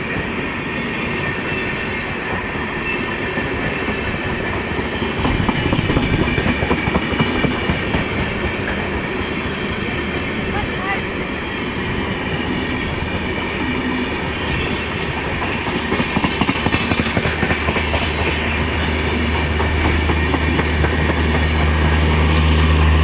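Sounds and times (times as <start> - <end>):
train wheels clattering over rail joints: 3.2 - 9.1, 13.1 - 22.0.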